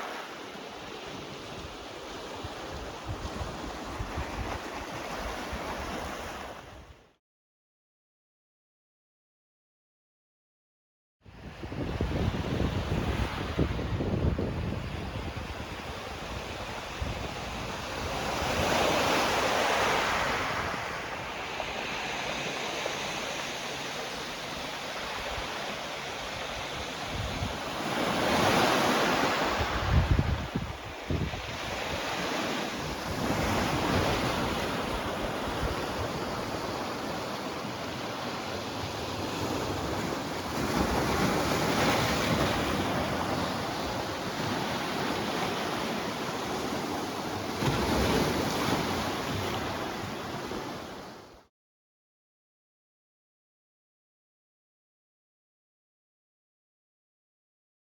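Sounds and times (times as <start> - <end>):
wind buffeting microphone: 11.4 - 18.7, 26.4 - 27.7, 29.5 - 36.5.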